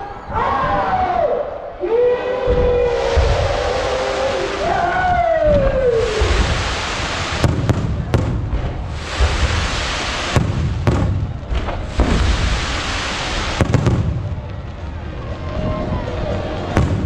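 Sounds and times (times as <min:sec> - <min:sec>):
low rumble: 0:02.4 - 0:17.0
fireworks bursting with bangs: 0:02.5 - 0:04.7, 0:05.5 - 0:15.2, 0:16.2 - 0:17.0
fireworks crackling: 0:02.7 - 0:17.0.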